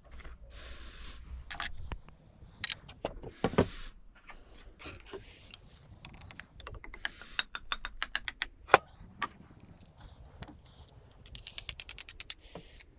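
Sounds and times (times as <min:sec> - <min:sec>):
small hard parts clicking: 0:01.4 - 0:03.2, 0:04.8 - 0:12.9.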